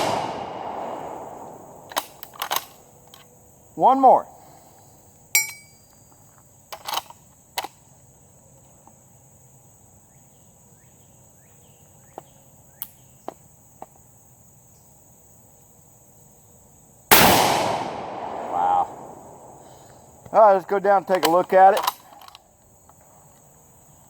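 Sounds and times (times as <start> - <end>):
sharp metallic clicks: 0.0 - 3.3, 17.1 - 22.4.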